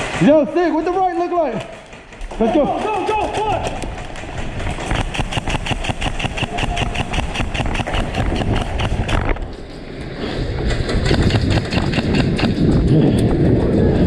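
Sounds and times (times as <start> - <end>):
rough rumbling noise: 0.0 - 14.0
airsoft gun rapid firing: 1.6 - 9.2, 11.0 - 12.6.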